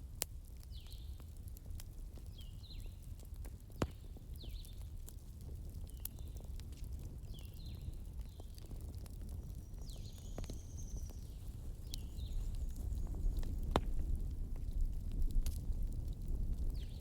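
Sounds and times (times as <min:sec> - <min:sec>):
campfire crackling: 0:00.0 - 0:17.0
loud fire pop: 0:13.4 - 0:14.2.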